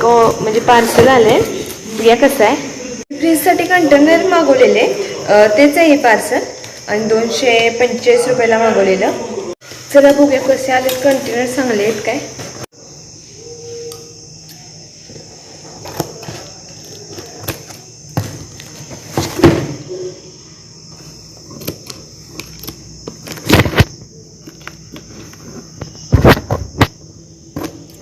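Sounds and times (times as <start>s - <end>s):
crickets chirring: 0.0s - 28.0s
packaging crinkling and rustling: 21.8s - 25.9s.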